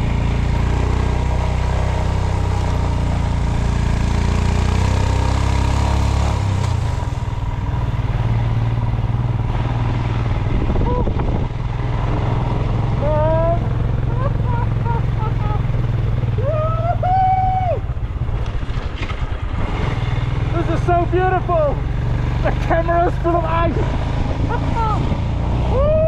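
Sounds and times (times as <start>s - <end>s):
motorcycle engine running: 0.0s - 26.0s
wind rushing over microphone: 6.4s - 13.9s.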